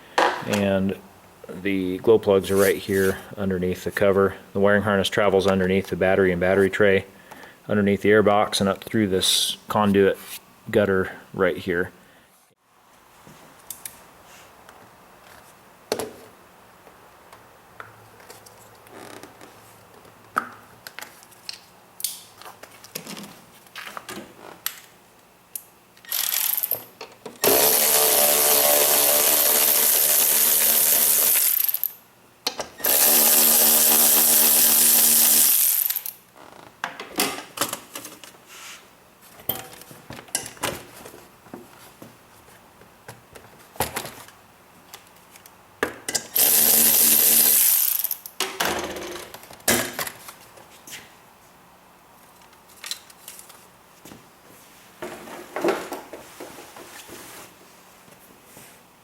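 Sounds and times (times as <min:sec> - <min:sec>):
handheld power tool running: 0:27.4 - 0:31.9, 0:32.8 - 0:36.2, 0:46.4 - 0:48.2
tools and parts clicking: 0:31.3 - 0:33.0, 0:46.1 - 0:50.0.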